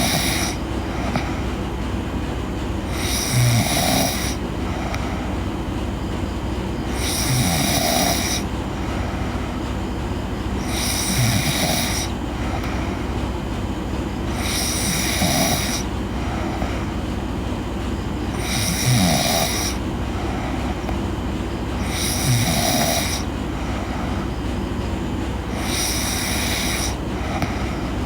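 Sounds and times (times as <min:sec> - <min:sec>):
woman snoring: 0:00.0 - 0:01.4, 0:02.9 - 0:04.4, 0:06.9 - 0:08.5, 0:10.6 - 0:12.7, 0:14.3 - 0:15.9, 0:18.3 - 0:19.8, 0:21.8 - 0:23.3, 0:25.5 - 0:28.0
steady low rumble: 0:22.7 - 0:28.0.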